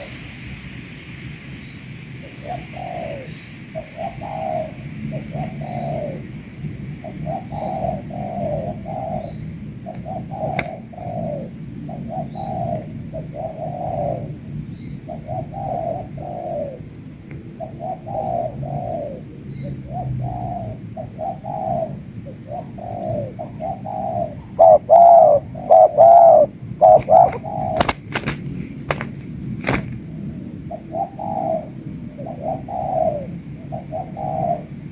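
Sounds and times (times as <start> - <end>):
doves cooing: 2.2 - 34.9
sharp clicks: 9.9 - 10.8, 27.0 - 30.0.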